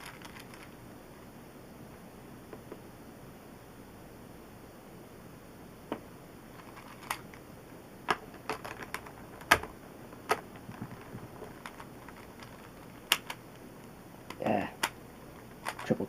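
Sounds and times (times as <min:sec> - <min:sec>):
plastic puzzle cube clacking: 0:00.0 - 0:00.8, 0:06.6 - 0:07.4, 0:08.1 - 0:13.6, 0:14.3 - 0:16.0.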